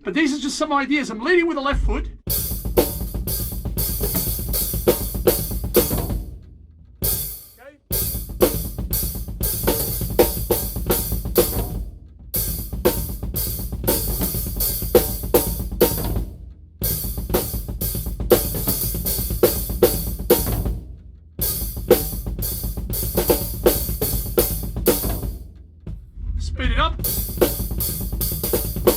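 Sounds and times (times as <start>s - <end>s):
acoustic drum kit groove: 0.2s - 28.9s.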